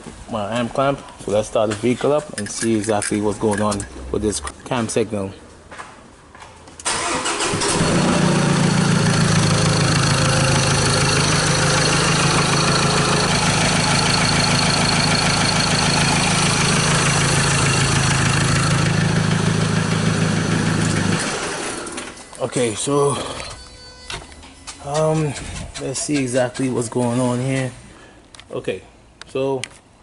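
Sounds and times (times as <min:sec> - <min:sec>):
diesel engine starting and idling: 0:06.8 - 0:22.2.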